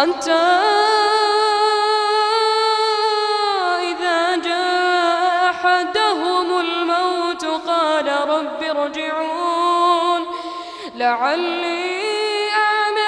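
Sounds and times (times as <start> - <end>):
boy chanting melodically: 0.0 - 13.0.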